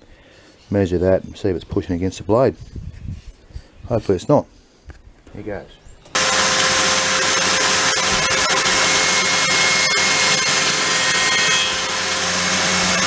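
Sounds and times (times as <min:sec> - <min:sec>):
circular saw cutting timber: 0:06.1 - 0:13.0.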